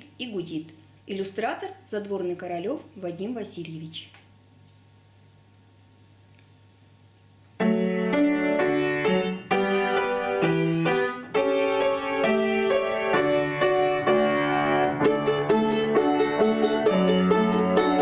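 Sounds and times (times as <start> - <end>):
piano accompaniment: 7.6 - 18.0
plucked string instrument: 14.2 - 18.0.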